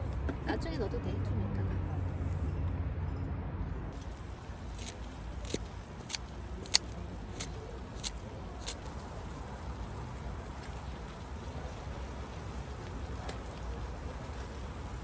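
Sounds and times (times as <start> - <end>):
scissors snipping food: 4.0 - 8.9.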